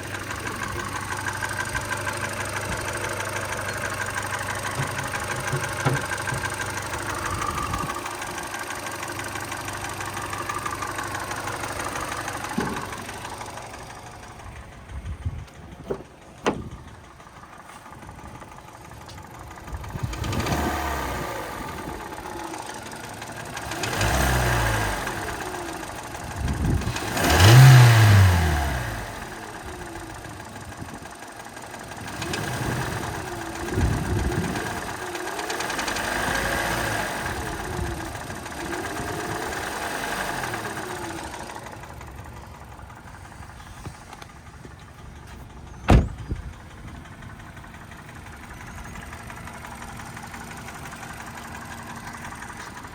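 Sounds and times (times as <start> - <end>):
car engine revving: 19.9 - 26.0, 26.7 - 29.4, 35.4 - 37.6.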